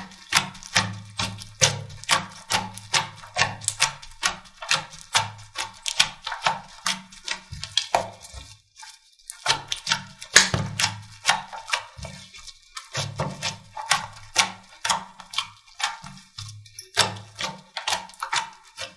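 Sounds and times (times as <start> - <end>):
slime clicking and popping: 0.0 - 8.0, 9.3 - 12.0.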